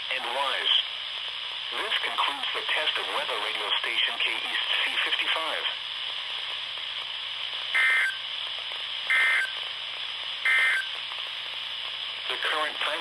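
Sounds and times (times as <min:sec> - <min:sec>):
radio hiss: 0:00.0 - 0:13.0
screechy data bursts: 0:07.7 - 0:08.2, 0:09.1 - 0:09.6, 0:10.4 - 0:11.0.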